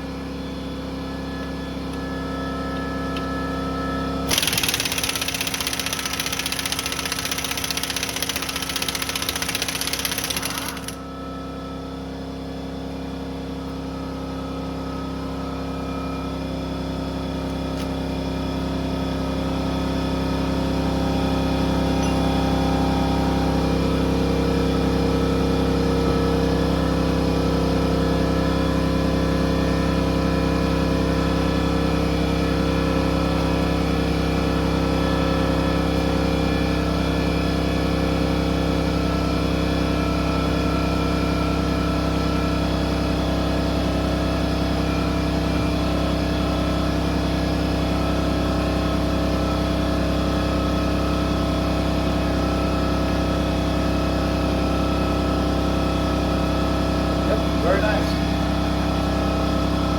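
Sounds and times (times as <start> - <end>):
machine motor humming: 1.2 - 11.4.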